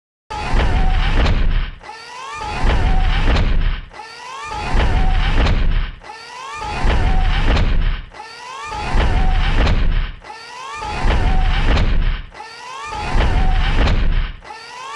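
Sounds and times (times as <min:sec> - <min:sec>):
heavy low footstep thuds: 0:00.6 - 0:01.8, 0:02.6 - 0:03.8, 0:04.8 - 0:06.0, 0:06.9 - 0:08.0, 0:09.0 - 0:10.2, 0:11.0 - 0:12.3, 0:13.2 - 0:14.4.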